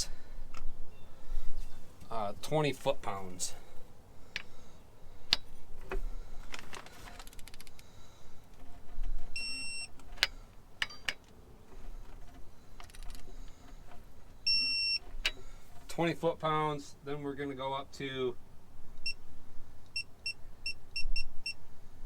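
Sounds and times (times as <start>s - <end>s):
metallic clicks of wrench on bolts: 5.3s - 5.5s
torque wrench beeping: 9.3s - 11.2s, 14.4s - 15.5s.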